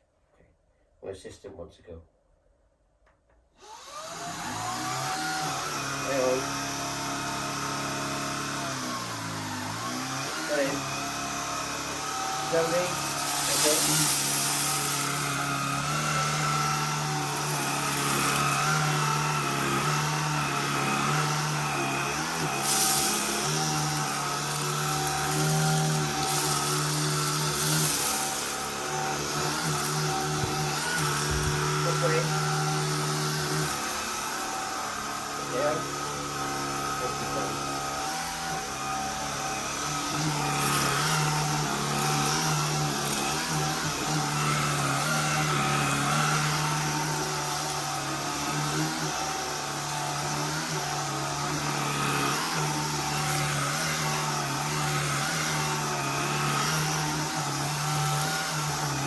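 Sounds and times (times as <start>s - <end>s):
vacuum cleaner running: 3.6s - 59.0s.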